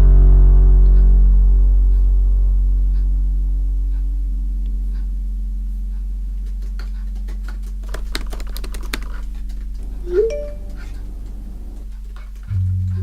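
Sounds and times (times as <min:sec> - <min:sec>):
typewriter keys clacking: 0:07.8 - 0:12.3
faint ticks: 0:07.9 - 0:12.6
low gong-like drone: 0:09.2 - 0:12.9.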